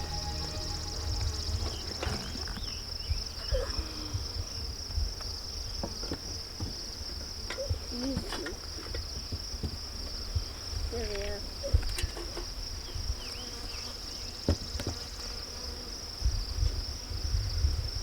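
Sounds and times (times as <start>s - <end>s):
low rumble: 0.0s - 2.9s
insects trilling: 0.0s - 6.2s.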